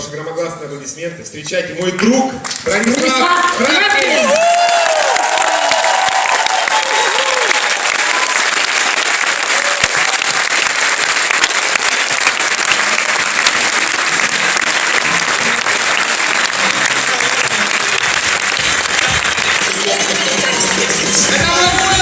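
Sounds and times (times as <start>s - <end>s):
audience applauding: 1.9s - 22.0s.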